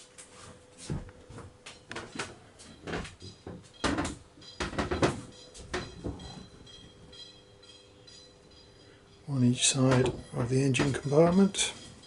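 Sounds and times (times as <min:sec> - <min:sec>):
faint steady hum: 0:00.0 - 0:12.0
wooden knocks and clicks: 0:01.9 - 0:06.5, 0:09.8 - 0:11.8.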